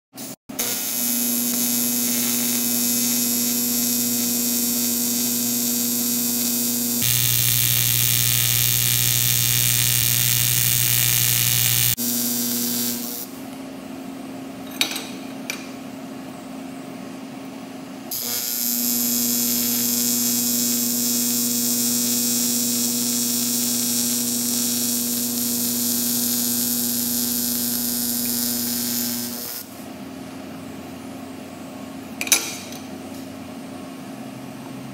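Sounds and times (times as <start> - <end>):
welding arc buzzing and hissing: 0.2 - 13.4, 18.1 - 29.8.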